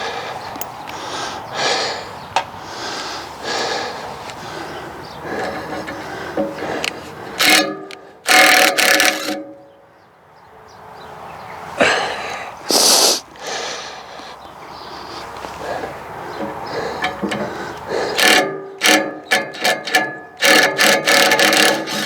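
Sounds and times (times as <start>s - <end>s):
metal tools scraping and clanking: 5.2s - 9.8s, 16.3s - 22.0s.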